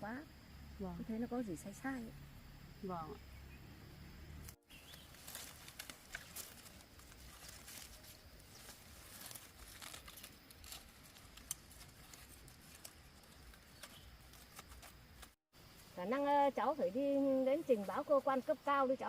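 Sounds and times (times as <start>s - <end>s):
rustling and crinkling: 4.5s - 16.0s.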